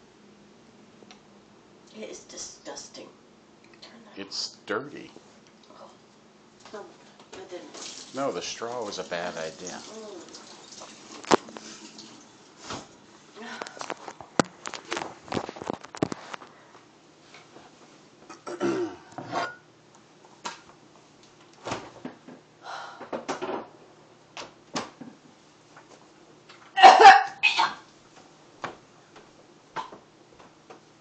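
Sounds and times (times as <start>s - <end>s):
woman coughing: 18.4s - 19.1s, 26.8s - 27.8s.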